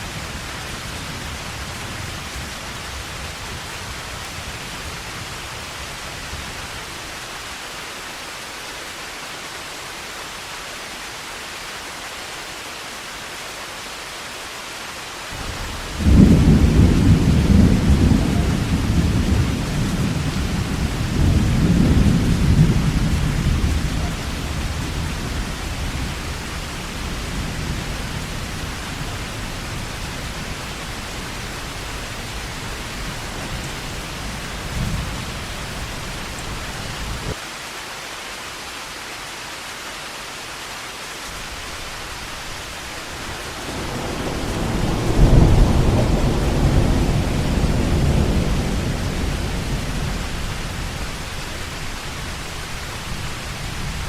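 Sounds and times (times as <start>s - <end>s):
heavy rain: 0.0s - 54.0s
thunder rumbling: 15.4s - 37.4s, 41.7s - 54.0s.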